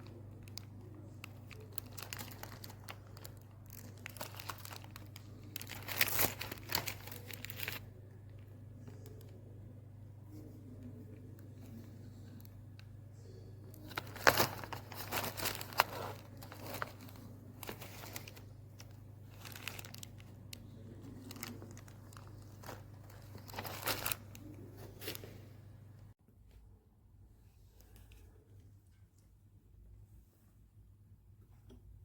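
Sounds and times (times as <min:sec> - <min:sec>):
crinkling handling noise: 0:00.0 - 0:09.6, 0:10.2 - 0:26.2.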